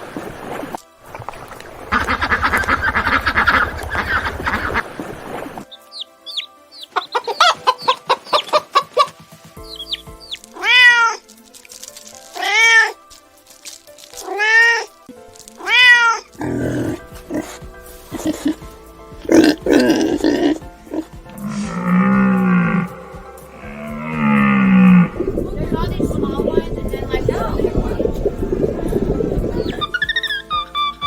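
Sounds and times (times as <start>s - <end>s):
pulsed animal calls: 1.9s - 4.9s, 15.6s - 31.0s
raspy animal calls: 1.9s - 5.0s, 6.3s - 11.2s, 12.4s - 13.0s, 15.6s - 31.0s
high animal chirps: 5.7s - 11.2s, 19.3s - 25.2s, 27.0s - 31.0s
cat meowing: 10.6s - 11.2s, 15.6s - 16.3s.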